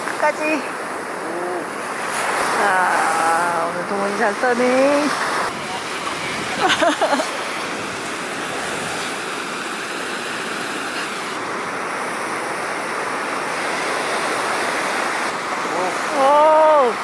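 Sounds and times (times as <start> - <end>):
ocean waves breaking: 0.0 - 17.0.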